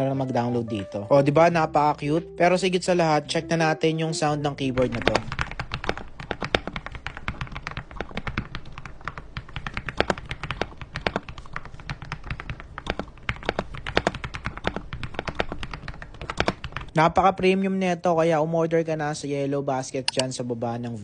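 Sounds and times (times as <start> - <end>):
mechanical keyboard typing: 4.6 - 16.9.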